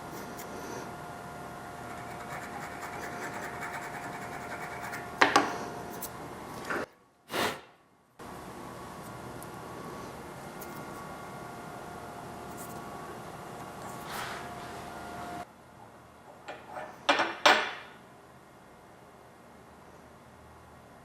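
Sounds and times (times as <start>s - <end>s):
steady hum: 0.0s - 7.5s, 8.2s - 15.8s.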